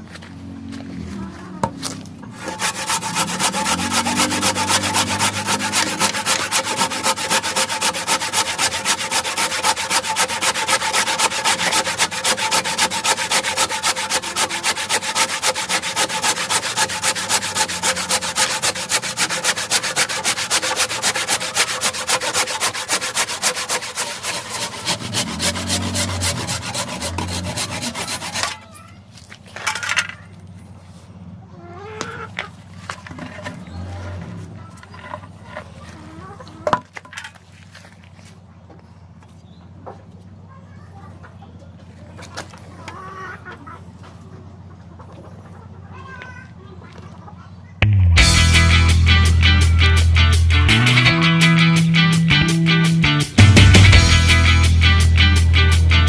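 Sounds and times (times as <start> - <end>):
hand saw cutting wood: 1.6 - 28.7.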